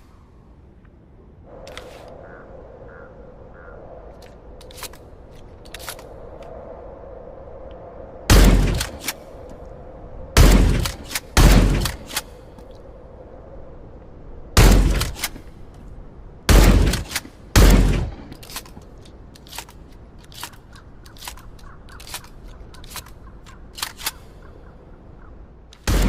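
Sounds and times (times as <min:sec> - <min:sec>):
shotgun shots: 0:08.3 - 0:09.0, 0:10.4 - 0:12.2, 0:16.5 - 0:18.3
shotgun action clicks: 0:16.6 - 0:24.5.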